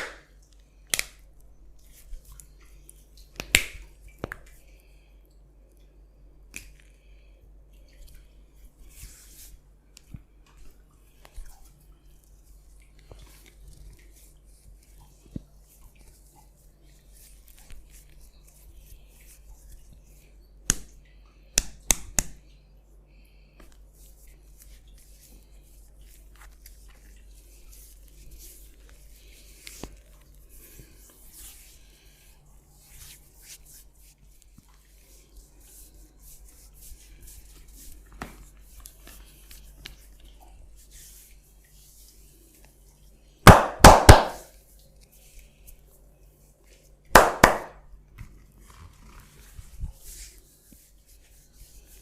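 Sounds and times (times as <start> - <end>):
sharp snaps: 0.0 - 0.3, 0.9 - 1.2, 3.4 - 4.4, 21.6 - 22.4, 43.4 - 44.5, 47.1 - 47.8
hands rubbing skin: 1.8 - 4.6, 8.0 - 20.9, 23.6 - 52.0.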